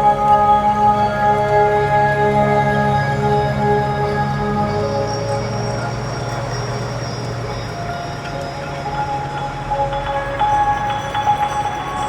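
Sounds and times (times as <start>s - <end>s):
low drone: 0.0s - 12.0s
chime-like melodic notes: 3.2s - 12.0s.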